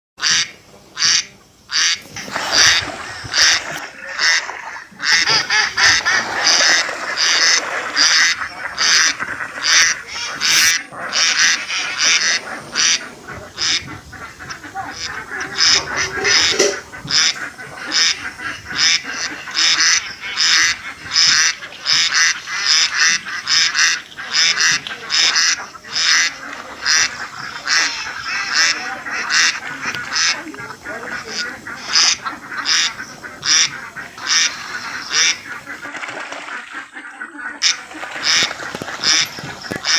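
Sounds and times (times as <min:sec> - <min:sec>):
ducks quacking: 0:00.2 - 0:39.9.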